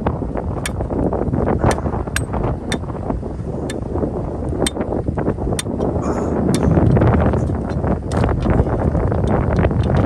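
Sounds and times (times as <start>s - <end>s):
strong wind buffeting microphone: 0.0s - 10.0s.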